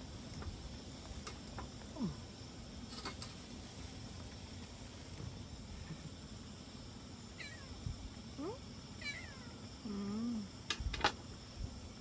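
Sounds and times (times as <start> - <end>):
cat meowing: 7.4 - 7.7, 9.0 - 9.6.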